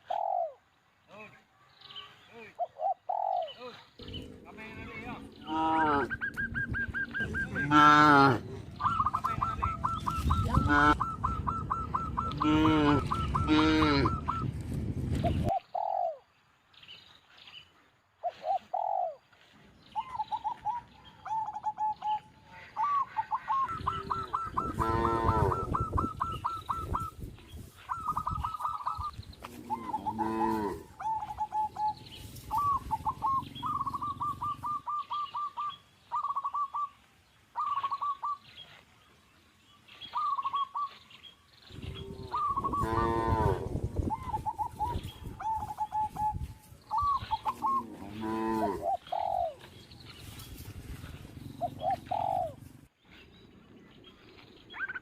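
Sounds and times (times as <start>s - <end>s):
small birds chirping: 0.0s - 7.8s, 8.4s - 55.0s
cattle mooing: 4.2s - 6.2s, 7.5s - 8.6s, 12.3s - 14.2s, 24.7s - 25.7s, 29.5s - 30.9s, 41.9s - 43.8s, 47.7s - 48.8s.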